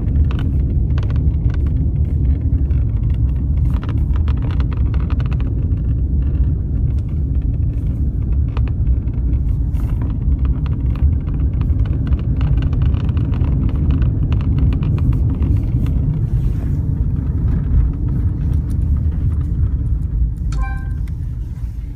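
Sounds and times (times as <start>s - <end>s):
low road rumble: 0.0s - 21.9s
short pitched beep: 20.5s - 21.1s.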